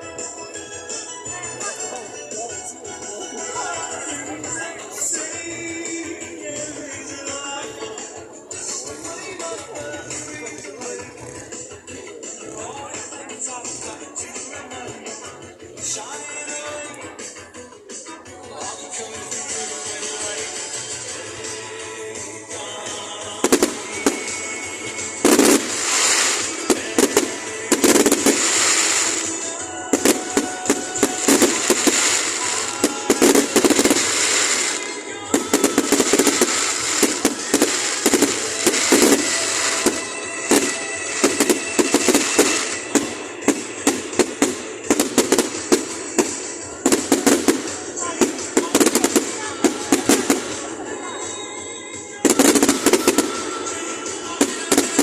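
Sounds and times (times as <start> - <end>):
music playing: 0.0 - 55.0
fireworks bangs and crackles: 23.2 - 51.0, 52.2 - 55.0.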